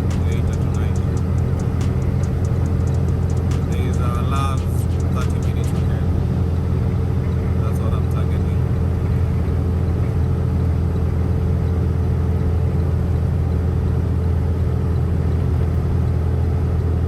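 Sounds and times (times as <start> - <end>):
diesel truck engine droning: 0.0 - 17.0
road noise: 0.0 - 17.0.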